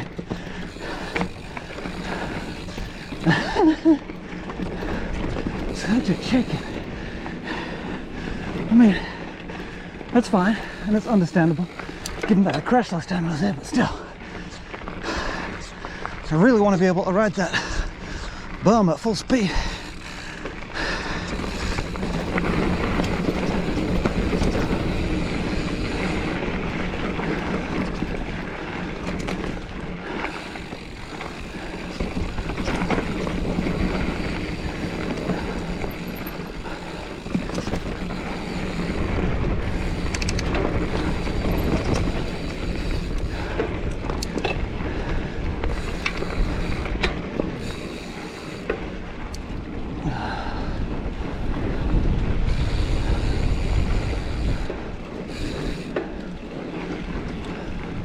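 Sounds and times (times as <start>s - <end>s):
bike tyres rolling on dirt: 0.0s - 58.0s
wind on microphone: 49.7s - 55.9s.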